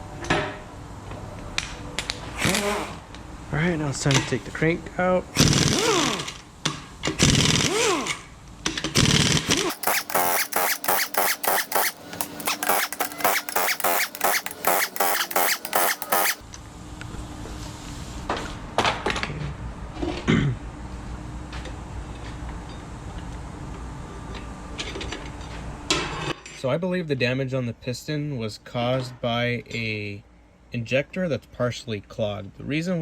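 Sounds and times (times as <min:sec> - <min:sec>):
sharp rattling tool strokes: 0:09.6 - 0:16.4.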